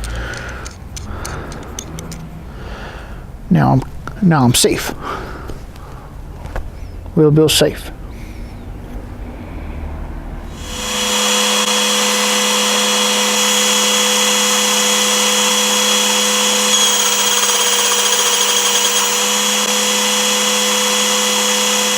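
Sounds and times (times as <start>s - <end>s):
small motor whirring: 15.1s - 20.1s.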